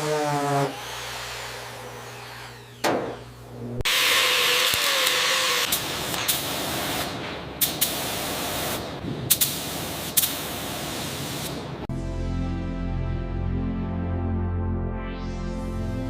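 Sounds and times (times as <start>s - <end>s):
hissing spray: 3.9s - 11.7s.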